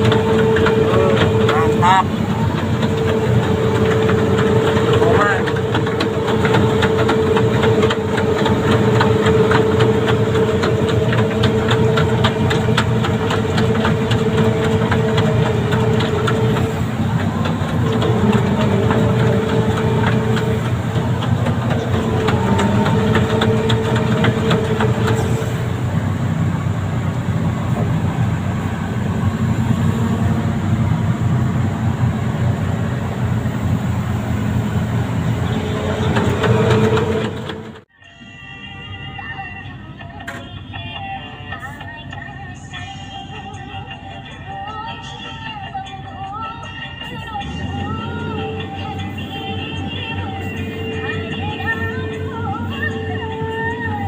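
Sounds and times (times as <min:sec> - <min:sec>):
diesel engine clattering: 0:00.0 - 0:54.0
steady humming tone: 0:37.9 - 0:54.0.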